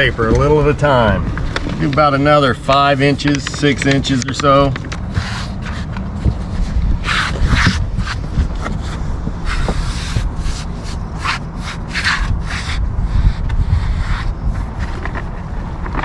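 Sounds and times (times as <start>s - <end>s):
steady low rumble: 0.0s - 16.0s
scratchy rubbing strokes: 5.0s - 15.7s.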